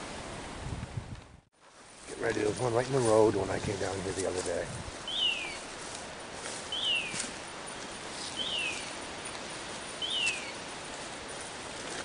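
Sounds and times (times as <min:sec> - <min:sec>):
bird calling sharp note: 0:10.0 - 0:10.6.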